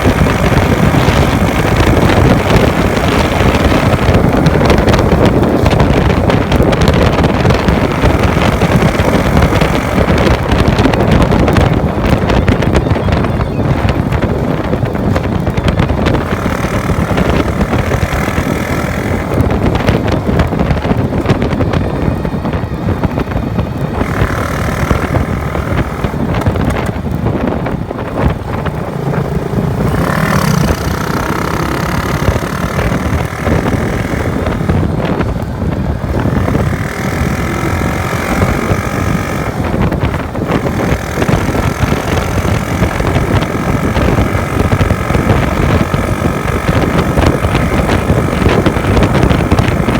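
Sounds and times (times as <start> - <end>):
motorcycle engine running: 0.0 - 49.9
wind buffeting microphone: 0.0 - 49.9.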